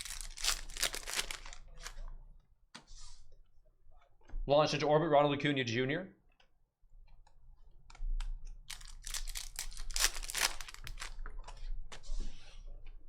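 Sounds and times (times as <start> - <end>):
cards and wrappers rustling: 0.0 - 2.0, 8.7 - 11.6.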